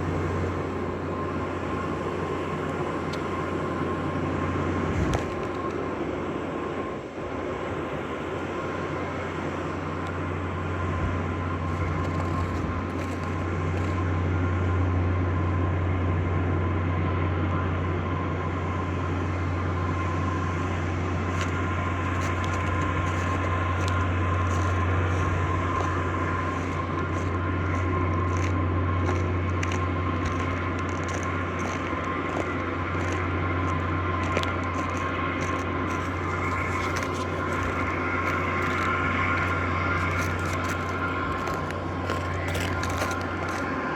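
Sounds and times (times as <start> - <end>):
faint high whine: 0.0 - 43.9
generator humming: 0.0 - 43.9.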